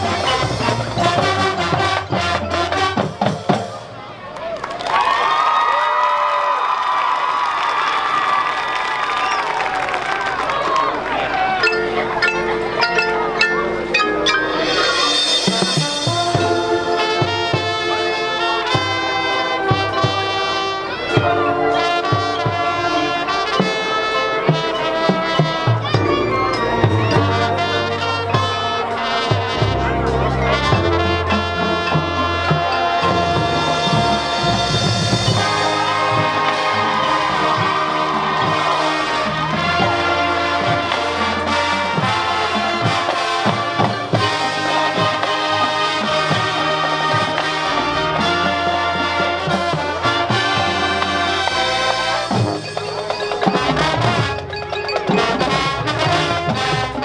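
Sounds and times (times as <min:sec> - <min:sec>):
brass section holding chords: 0:00.0 - 0:03.3, 0:11.6 - 0:52.7, 0:53.4 - 0:57.0
steady drum beat: 0:11.6 - 0:18.0, 0:24.5 - 0:57.0.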